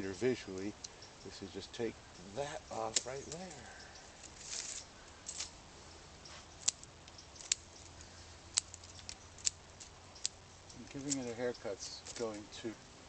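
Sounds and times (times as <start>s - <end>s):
leaves rustling: 0.0s - 13.0s
pruning scissors snipping twigs: 2.7s - 5.6s, 6.3s - 11.4s, 12.0s - 12.4s.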